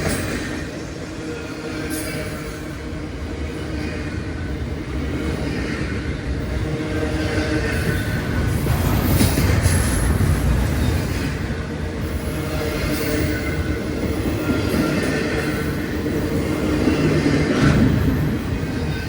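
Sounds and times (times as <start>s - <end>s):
train rumbling past on rails: 0.0s - 19.0s.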